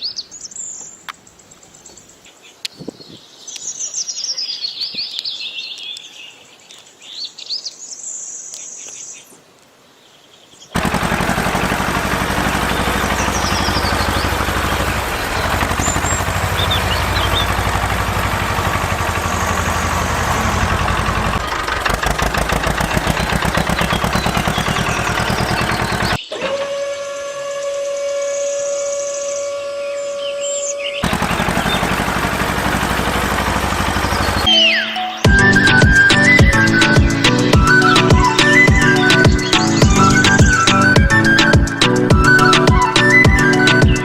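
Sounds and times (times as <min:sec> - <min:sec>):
low hum: 0:10.8 - 0:26.2, 0:31.0 - 0:34.5
fast-rattling machine noise: 0:10.8 - 0:26.7, 0:31.0 - 0:34.5, 0:35.3 - 0:44.0
birds singing descending trills: 0:11.8 - 0:26.4, 0:27.0 - 0:44.0.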